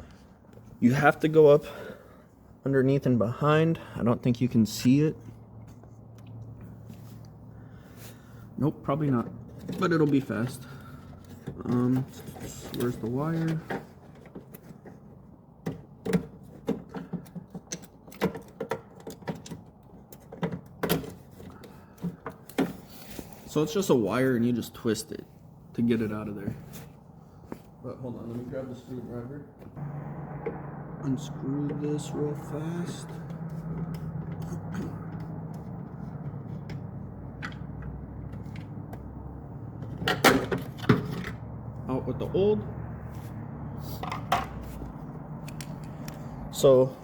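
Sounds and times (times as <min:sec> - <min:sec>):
plastic and metal parts clattering: 0:09.0 - 0:23.4, 0:39.8 - 0:41.4
low steady hum: 0:29.8 - 0:41.9.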